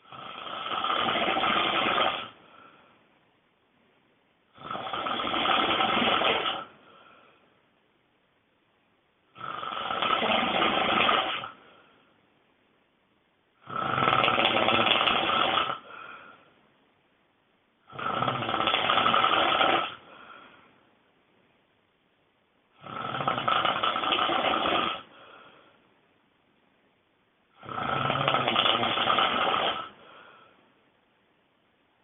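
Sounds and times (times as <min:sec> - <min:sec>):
person snoring loudly: 0:00.0 - 0:02.4, 0:04.5 - 0:06.8, 0:09.3 - 0:11.6, 0:13.6 - 0:16.3, 0:17.9 - 0:20.4, 0:22.8 - 0:25.3, 0:27.6 - 0:30.3
faint breath: 0:02.4 - 0:03.2, 0:06.7 - 0:07.7, 0:11.6 - 0:12.3, 0:15.8 - 0:16.7, 0:20.0 - 0:20.9, 0:25.0 - 0:26.0, 0:29.9 - 0:30.8.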